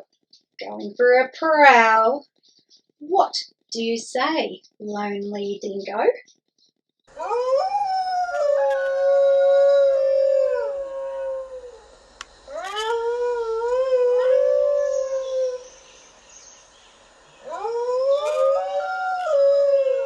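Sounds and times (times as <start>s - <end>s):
dingo howling: 7.1s - 20.0s.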